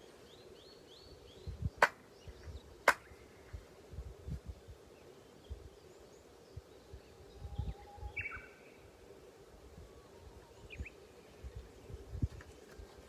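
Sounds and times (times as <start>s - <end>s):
faint steady hum: 0.0s - 13.0s
bird chirping: 5.0s - 9.0s.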